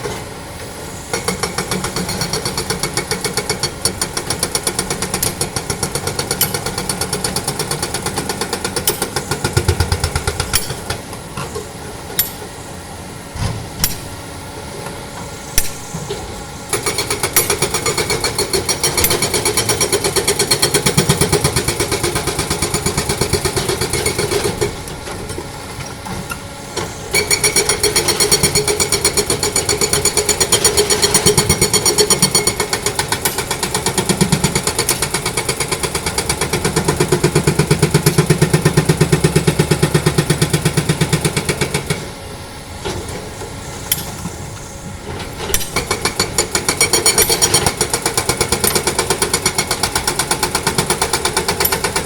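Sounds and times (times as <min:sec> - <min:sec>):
hydraulic breaker hammering rock: 0:01.1 - 0:11.1, 0:12.2 - 0:12.5, 0:13.8 - 0:14.2, 0:15.6 - 0:16.1, 0:16.7 - 0:25.5, 0:27.1 - 0:42.1, 0:45.4 - 0:52.0.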